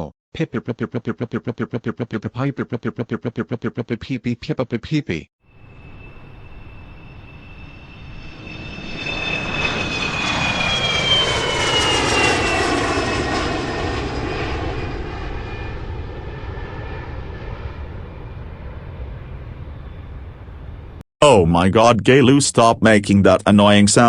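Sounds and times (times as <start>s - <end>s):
airplane engine passing overhead: 5.4s - 21.0s.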